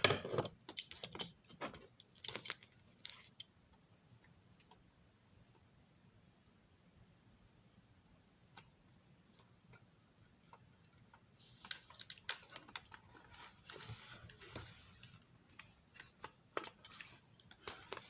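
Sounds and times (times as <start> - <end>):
small parts and tools clicking: 0.0 - 4.0, 10.5 - 13.4.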